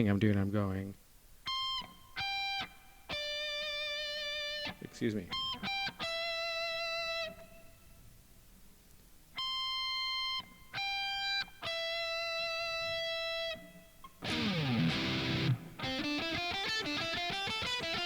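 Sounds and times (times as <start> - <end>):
distorted electric guitar notes: 14.2 - 18.0.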